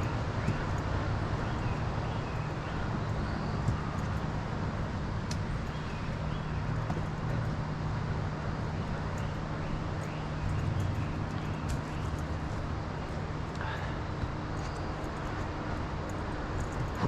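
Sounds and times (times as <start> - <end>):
light ticks: 5.2 - 5.8.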